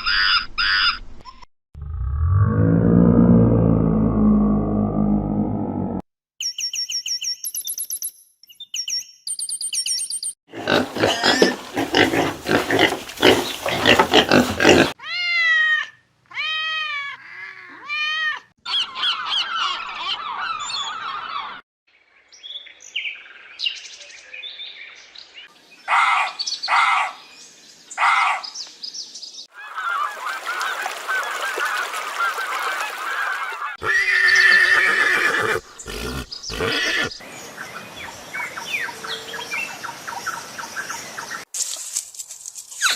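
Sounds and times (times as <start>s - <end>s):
honking animal calls: 10.5s - 15.0s, 33.8s - 37.2s
animal calls and cries: 10.5s - 21.6s, 29.5s - 41.4s.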